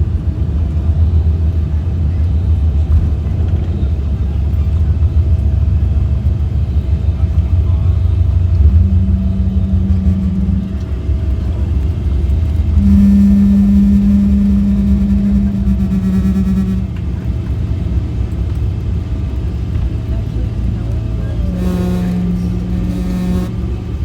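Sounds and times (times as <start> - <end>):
deep rumble of airplane cabin: 0.0 - 24.0
steady hum: 6.2 - 24.0.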